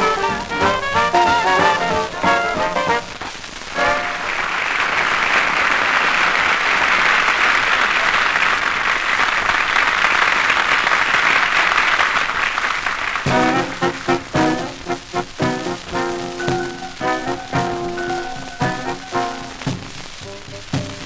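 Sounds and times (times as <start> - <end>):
band music: 0.0 - 4.6, 13.3 - 21.0
audience applauding: 0.0 - 21.0.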